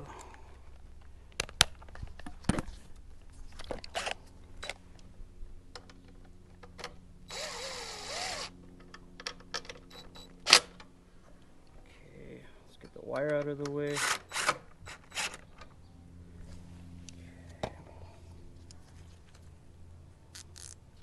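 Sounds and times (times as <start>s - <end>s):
cordless drill running: 7.3s - 8.6s.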